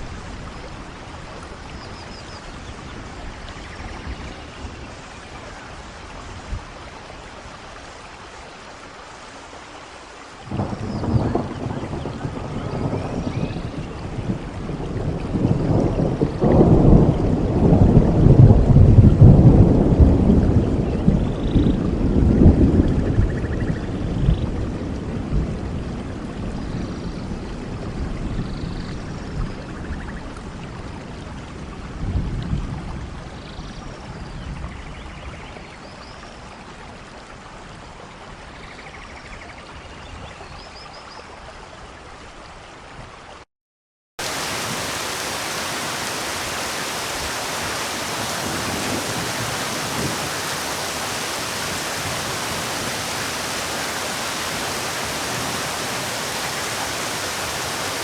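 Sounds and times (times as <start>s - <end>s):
rain hissing: 44.2s - 58.0s.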